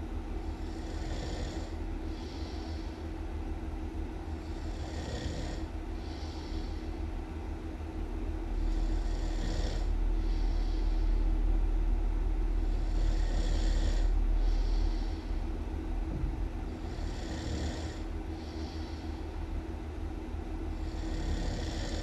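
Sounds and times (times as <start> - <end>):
person snoring loudly: 4.4 - 6.5, 8.6 - 9.9, 12.7 - 14.1, 16.8 - 18.0, 20.8 - 22.0.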